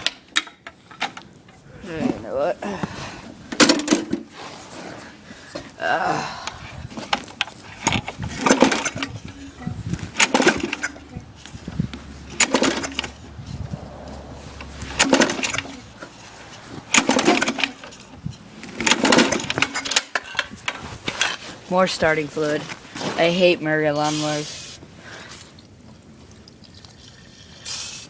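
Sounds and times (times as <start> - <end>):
lawn mower starter cord pulls: 7.0 - 9.5, 10.1 - 13.3, 14.5 - 21.4
engine turning over: 7.2 - 9.4, 10.1 - 20.0.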